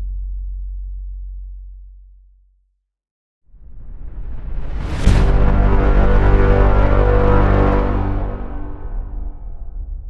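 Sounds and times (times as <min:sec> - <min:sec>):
deep booming low end: 0:03.6 - 0:10.0
heavy cinematic impact: 0:03.6 - 0:10.0
low pitched chord ringing: 0:05.0 - 0:09.8.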